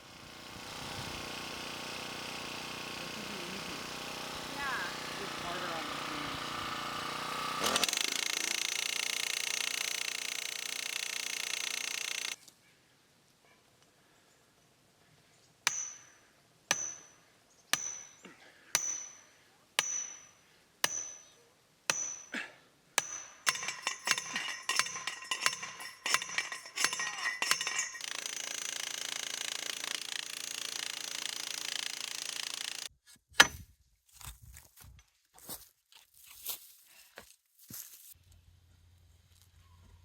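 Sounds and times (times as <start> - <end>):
ringing metal-on-metal blows: 15.7 - 17.2, 17.8 - 18.2, 18.8 - 22.4, 23.0 - 28.2
metal clanks: 23.0 - 28.3.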